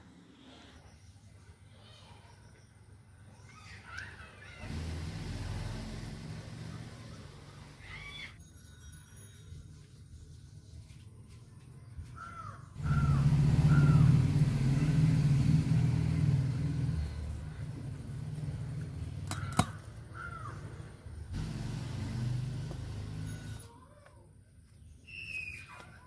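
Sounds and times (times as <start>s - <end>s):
crows cawing: 12.2s - 14.0s, 19.3s - 20.9s.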